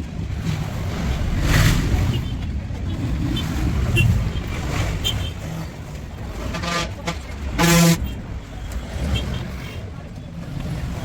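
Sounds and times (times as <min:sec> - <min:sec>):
passing traffic rumble: 0:00.0 - 0:11.0
vehicle horn toot: 0:06.4 - 0:08.2.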